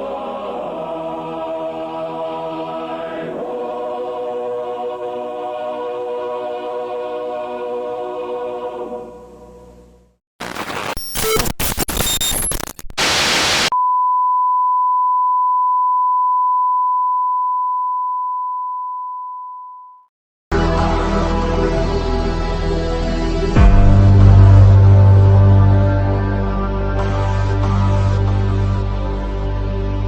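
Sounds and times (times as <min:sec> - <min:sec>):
television static crackling: 0:10.4 - 0:13.7
steady test tone beep: 0:13.7 - 0:20.0
music: 0:20.5 - 0:30.0.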